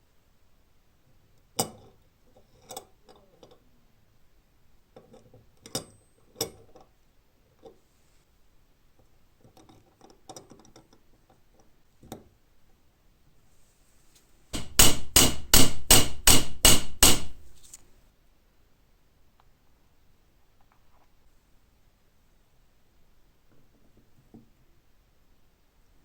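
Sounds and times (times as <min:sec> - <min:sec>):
hammer striking metal padlock: 0:14.6 - 0:17.5.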